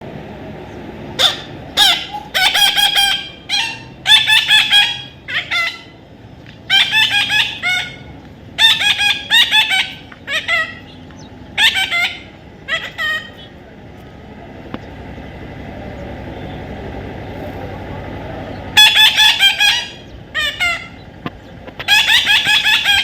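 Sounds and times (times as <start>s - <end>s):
parrot squawking: 1.2s - 6.0s, 6.7s - 13.6s, 18.7s - 21.1s, 21.7s - 23.0s.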